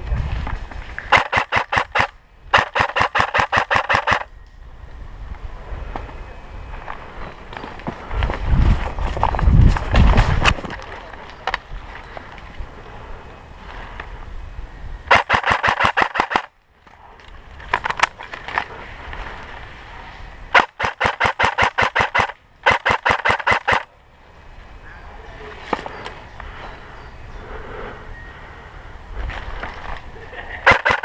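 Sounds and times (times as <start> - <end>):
airsoft gun full-auto bursts: 1.1 - 4.3, 15.1 - 16.5, 20.6 - 23.9, 30.6 - 31.0.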